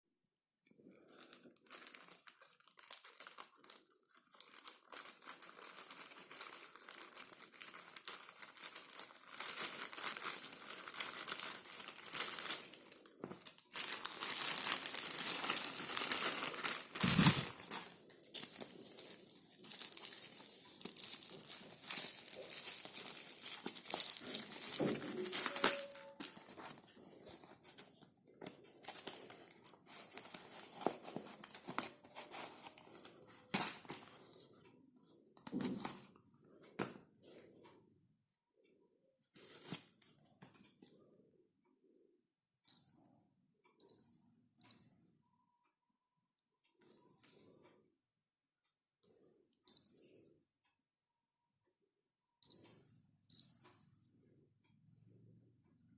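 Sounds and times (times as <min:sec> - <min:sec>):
packaging crinkling and rustling: 0:01.2 - 0:34.4.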